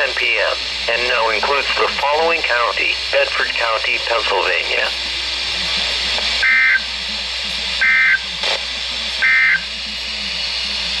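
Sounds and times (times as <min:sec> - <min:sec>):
radio hiss: 0:00.0 - 0:11.0
digital data tone bursts: 0:06.4 - 0:06.9, 0:07.8 - 0:08.3, 0:09.2 - 0:09.7.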